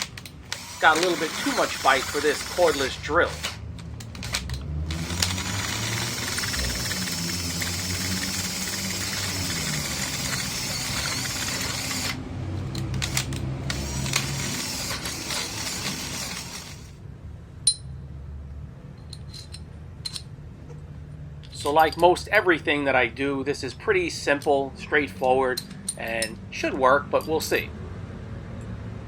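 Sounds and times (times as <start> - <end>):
drill grinding into steel: 0.0 - 12.2, 12.8 - 17.0
metallic clink: 17.6 - 18.0.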